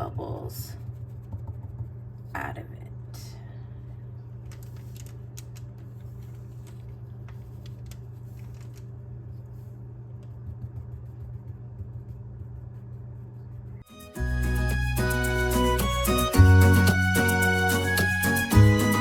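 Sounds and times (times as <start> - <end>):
steady low hum: 0.0 - 17.8
paintbrush dabbing on paper: 0.8 - 2.2, 9.3 - 13.8.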